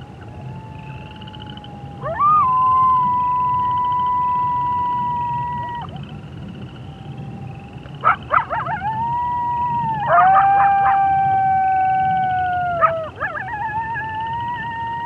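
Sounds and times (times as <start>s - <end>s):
wolves howling: 0.0s - 15.0s
wolf yips: 8.0s - 9.0s, 9.8s - 11.3s, 12.0s - 14.7s.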